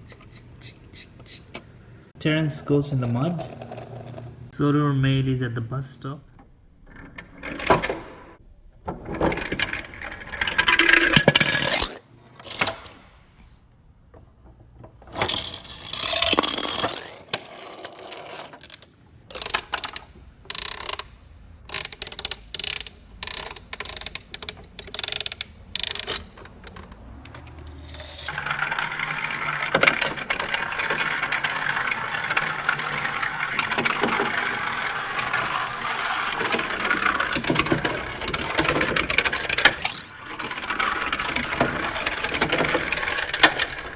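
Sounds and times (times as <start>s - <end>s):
small motor whirring: 15.2s - 21.0s, 21.7s - 37.7s
plastic toy pieces clicking: 15.2s - 28.4s, 29.0s - 43.9s.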